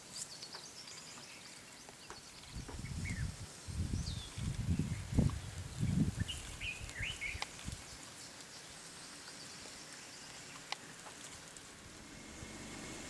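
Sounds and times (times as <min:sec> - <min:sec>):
faint outdoor hiss: 0:00.0 - 0:13.0
bird chirping: 0:00.1 - 0:10.7
low rumbling bursts: 0:11.8 - 0:13.0.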